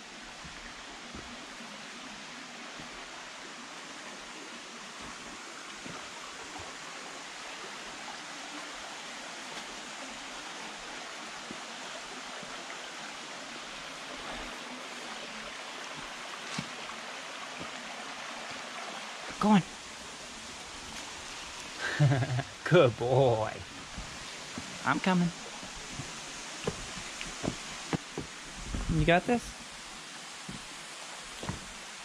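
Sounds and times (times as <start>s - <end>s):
rushing water: 0.0s - 32.0s.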